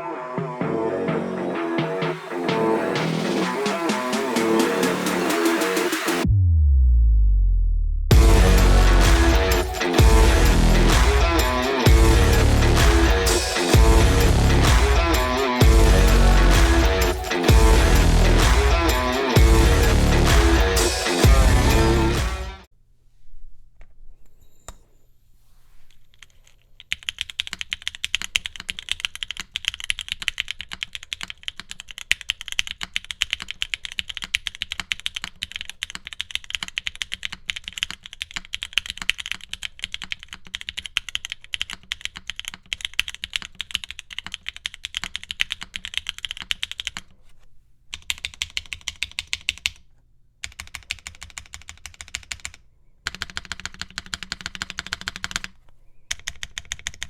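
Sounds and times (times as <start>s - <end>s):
typing on mechanical keyboard: 26.2s - 47.1s, 47.9s - 49.8s, 50.4s - 57.0s.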